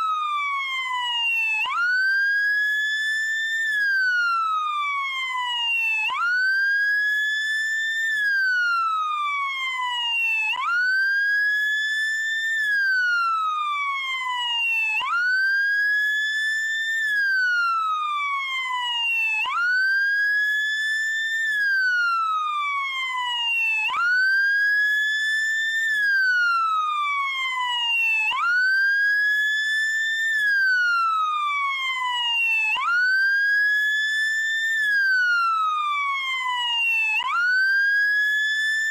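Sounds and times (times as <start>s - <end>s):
police siren wailing: 17.0s - 38.9s.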